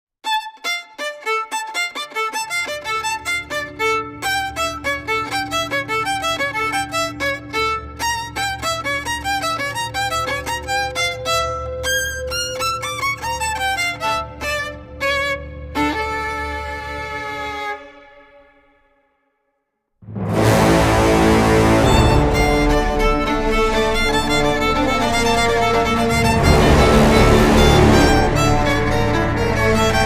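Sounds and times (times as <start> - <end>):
fast melody of short notes: 20.0 - 30.0
steady low bass: 20.0 - 30.0.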